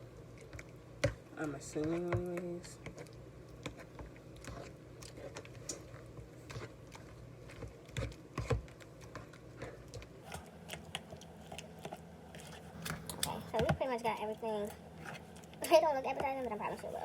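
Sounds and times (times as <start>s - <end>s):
utensil stirring paste in bowl: 0.3s - 17.0s.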